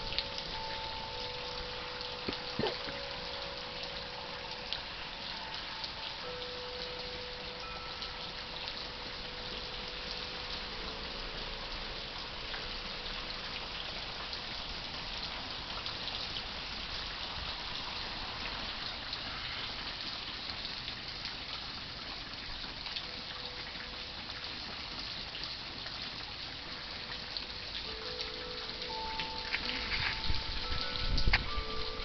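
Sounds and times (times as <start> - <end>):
rain falling: 0.0 - 32.0
raindrop ticks: 0.0 - 32.0.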